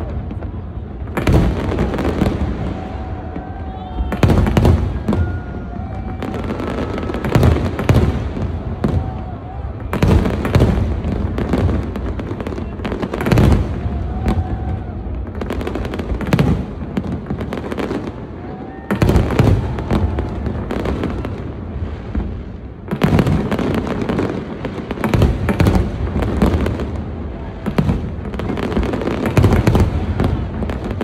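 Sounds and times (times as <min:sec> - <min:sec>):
firework crackle: 0:00.0 - 0:31.0.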